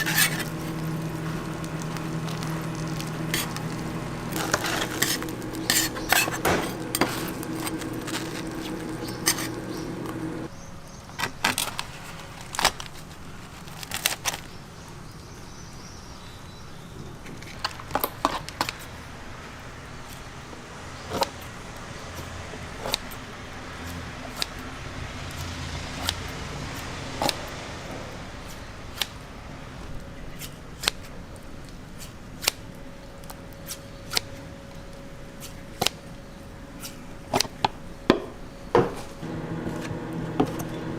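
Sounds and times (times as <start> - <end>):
food sizzling on a griddle: 0.0 - 10.4
cooking utensils clinking: 0.0 - 10.5
low traffic hum: 0.0 - 40.9.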